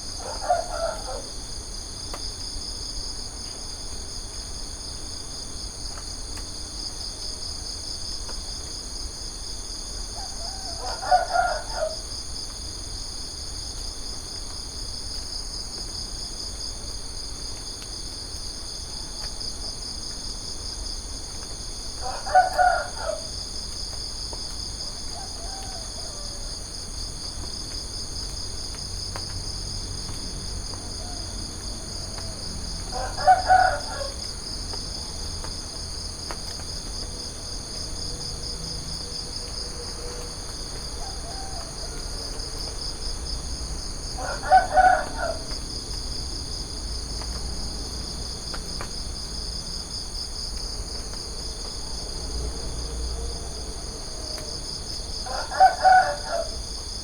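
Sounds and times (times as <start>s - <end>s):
insect chorus pulsing: 0.0s - 2.3s, 10.2s - 13.2s, 20.8s - 57.0s
rooster crowing: 0.2s - 1.4s, 10.2s - 12.1s, 22.0s - 23.4s, 24.9s - 26.7s, 30.9s - 35.0s, 39.1s - 45.6s, 52.8s - 57.0s.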